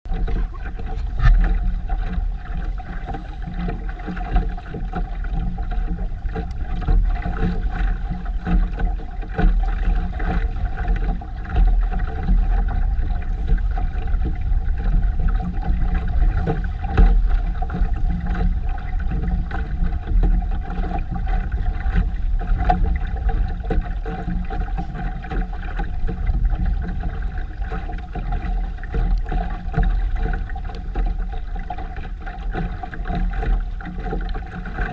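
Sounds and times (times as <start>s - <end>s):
rumble of wind and water: 0.0s - 34.9s
constant hum: 0.1s - 34.9s.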